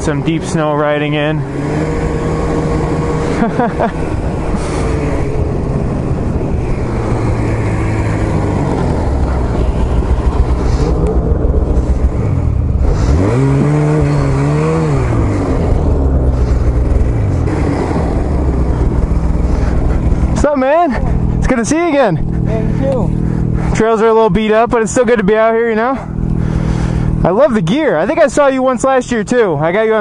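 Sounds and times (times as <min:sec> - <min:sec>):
snowmobile engine revving: 0:00.0 - 0:30.0.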